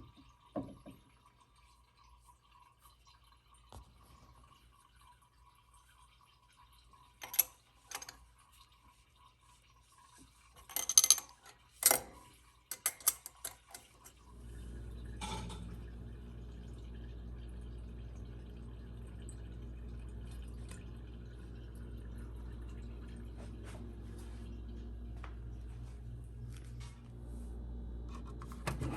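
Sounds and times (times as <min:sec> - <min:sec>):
steady machine hum: 0:14.2 - 0:28.9.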